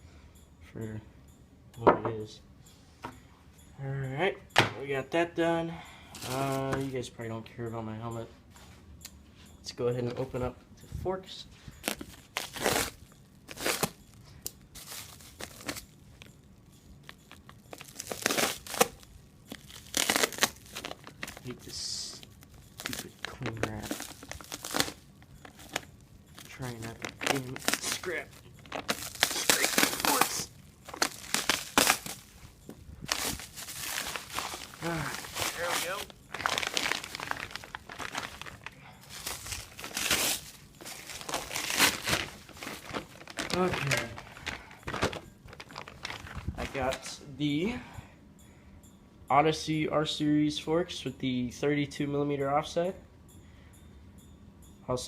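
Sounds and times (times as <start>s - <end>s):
plastic wrap rustling: 6.2s - 7.0s, 11.8s - 16.4s, 17.0s - 47.2s.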